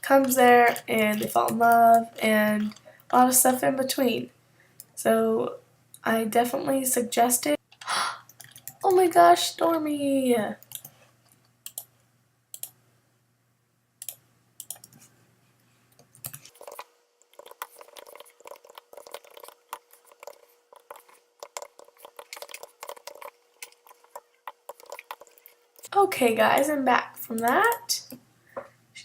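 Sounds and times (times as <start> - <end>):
computer keyboard typing: 0.1 - 3.3, 8.3 - 9.0, 10.6 - 10.9, 14.0 - 15.1, 16.0 - 25.9, 27.3 - 27.9.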